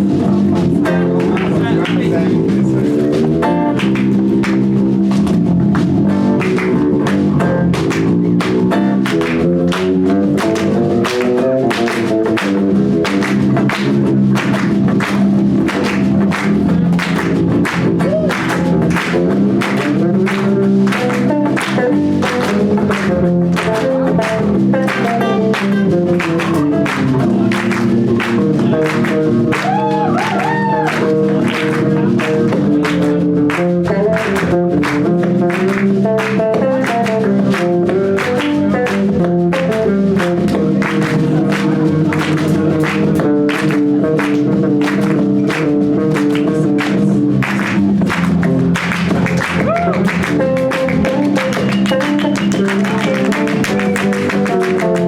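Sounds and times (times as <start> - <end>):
drums driving beat: 0.0 - 55.0
live rock band playing: 0.0 - 55.0.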